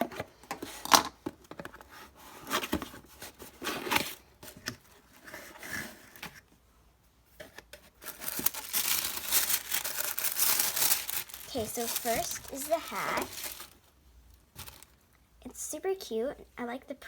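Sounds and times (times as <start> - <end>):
packaging rustling and tearing: 7.9 - 13.8, 14.5 - 15.0
packaging crinkling: 8.0 - 13.8, 14.5 - 15.0.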